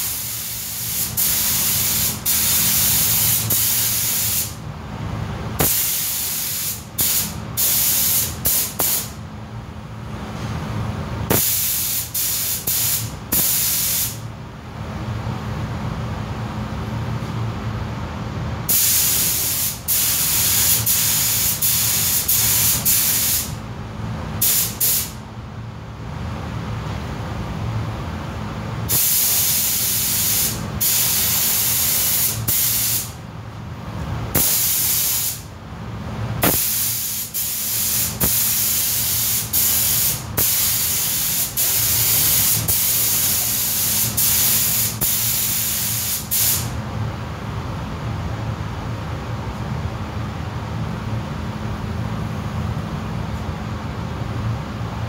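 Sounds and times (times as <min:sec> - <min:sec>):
paint spray gun hissing: 0:00.0 - 0:04.6, 0:05.6 - 0:09.1, 0:11.3 - 0:14.2, 0:18.7 - 0:23.5, 0:28.9 - 0:33.1, 0:34.4 - 0:35.5, 0:36.4 - 0:46.7
steady low hum: 0:00.0 - 0:55.0.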